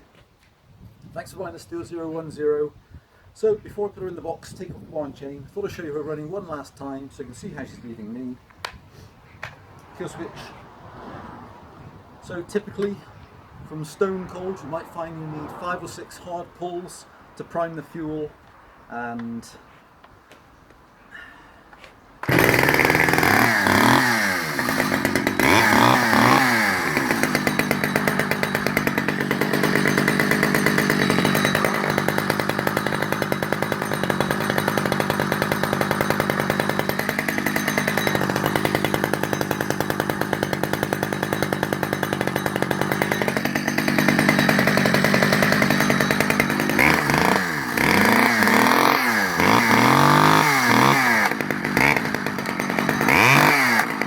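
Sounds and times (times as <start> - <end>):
chainsaw revving and idling: 22.2 - 54.0.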